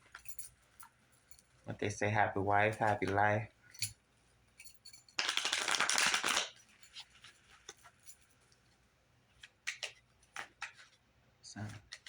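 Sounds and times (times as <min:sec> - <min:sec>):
cards being shuffled: 0:05.2 - 0:07.8, 0:09.4 - 0:11.0, 0:11.6 - 0:12.0
light ticks of cards handled: 0:11.6 - 0:12.0.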